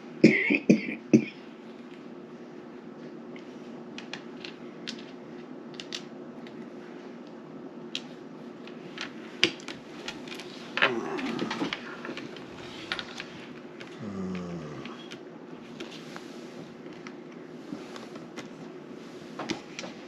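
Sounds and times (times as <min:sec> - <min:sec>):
steady low hum: 0:00.0 - 0:20.0
low vocal sound falling in pitch: 0:10.8 - 0:11.8, 0:13.9 - 0:15.2.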